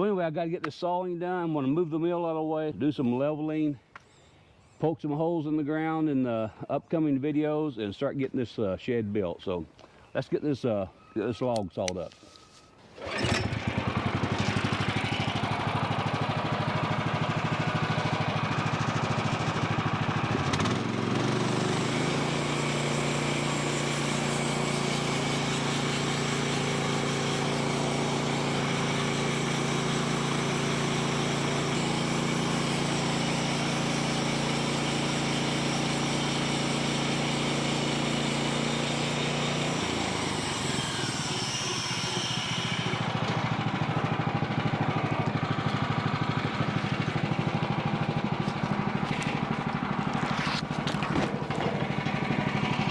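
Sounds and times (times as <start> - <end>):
small gasoline engine running: 13.0 - 52.9.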